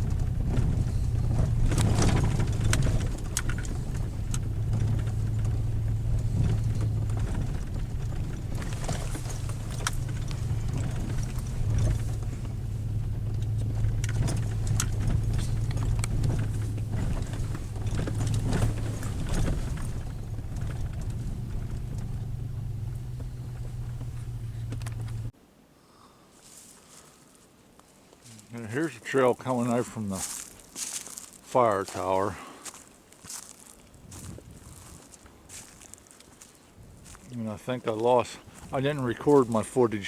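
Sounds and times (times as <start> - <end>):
clicks knocks and rattles: 0.0 - 25.3
vehicle engine and road hum: 0.0 - 25.4.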